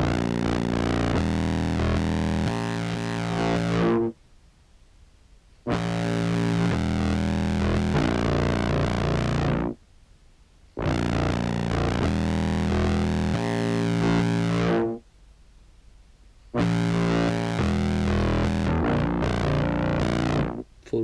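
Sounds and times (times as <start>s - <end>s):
low distorted clarinet phrases: 0.0s - 4.2s, 10.8s - 15.0s, 16.6s - 20.7s.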